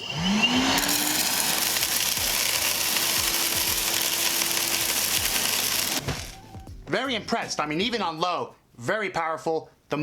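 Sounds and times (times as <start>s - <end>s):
vacuum motor whine: 0.0s - 6.4s.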